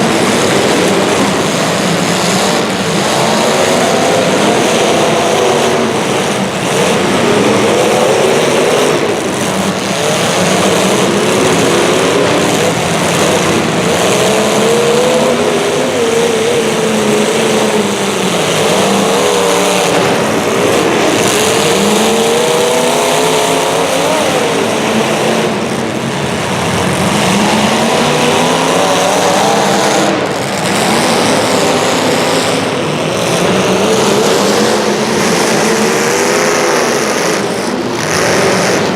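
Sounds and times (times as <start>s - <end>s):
racing engines revving: 0.0s - 38.9s.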